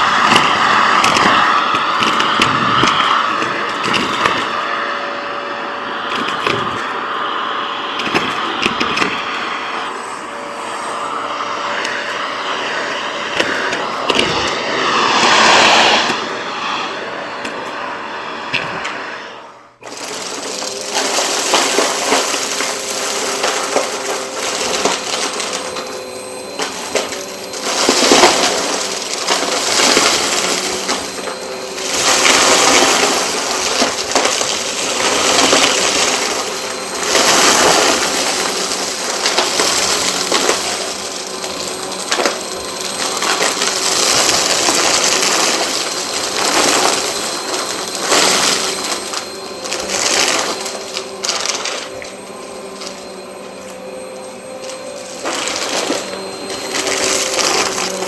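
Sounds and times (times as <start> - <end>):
debris crackling and rattling: 0.0 - 4.8, 6.0 - 7.1, 7.9 - 9.4, 19.8 - 58.0
vacuum cleaner running: 0.0 - 58.0.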